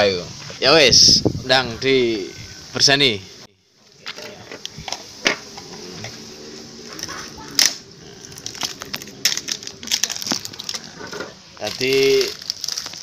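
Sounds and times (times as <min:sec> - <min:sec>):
small hard objects clicking: 0:07.6 - 0:13.0.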